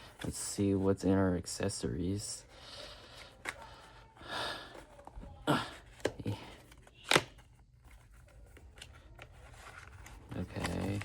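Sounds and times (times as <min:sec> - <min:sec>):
packaging rustling: 0:06.0 - 0:11.0.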